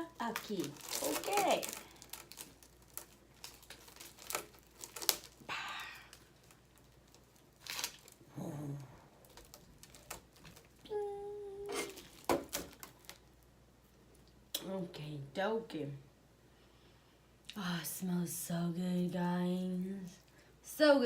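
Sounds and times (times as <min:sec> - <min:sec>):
wrapper crinkling and tearing: 0:00.0 - 0:08.3, 0:09.2 - 0:11.0, 0:11.6 - 0:13.5.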